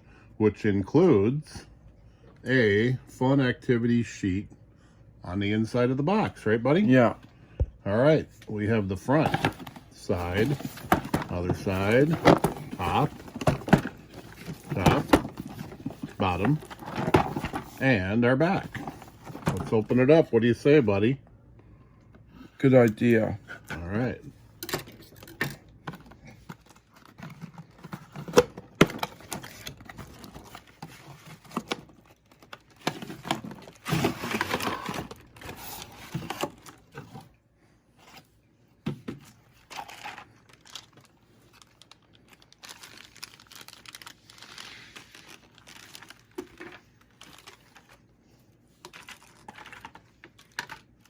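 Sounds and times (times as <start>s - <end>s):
crinkling and rustling: 8.0s - 20.3s, 22.6s - 51.0s
cardboard and plastic parts handled: 8.1s - 20.3s, 22.8s - 51.0s.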